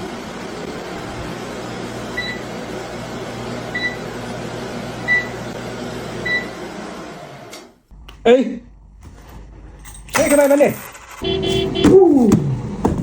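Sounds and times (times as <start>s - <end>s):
whooshing hum: 0.0s - 3.7s
short electronic beeps: 11.2s - 12.0s.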